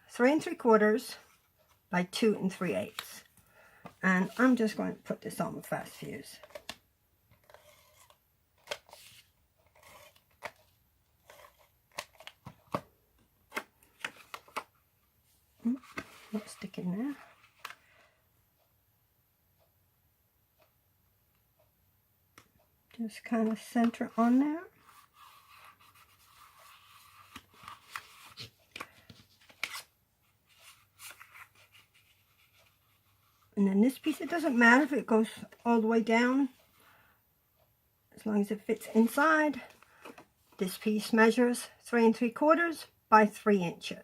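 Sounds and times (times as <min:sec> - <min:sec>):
card stock rustling and scraping: 0:07.4 - 0:12.8, 0:15.7 - 0:17.8, 0:23.5 - 0:29.9, 0:30.5 - 0:33.5.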